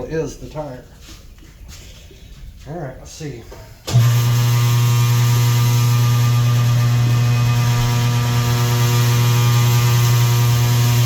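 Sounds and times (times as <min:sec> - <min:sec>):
electric turntable motor humming: 0:03.9 - 0:11.0.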